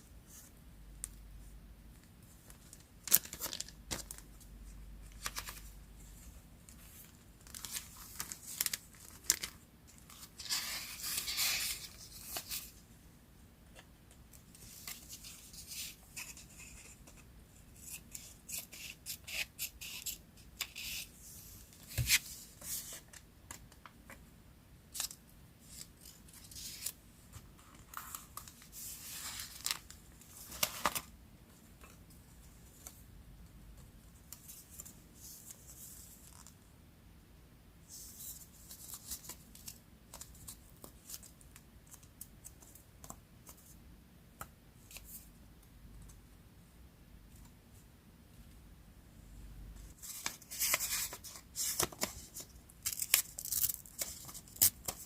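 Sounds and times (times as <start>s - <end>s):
paper rustling: 25.7s - 31.1s, 49.9s - 55.0s.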